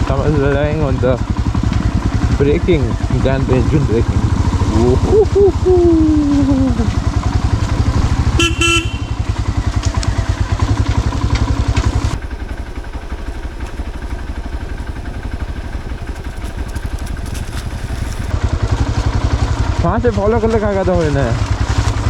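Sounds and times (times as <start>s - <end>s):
motorcycle engine thumping: 0.0s - 18.3s
short horn toot: 8.3s - 9.4s.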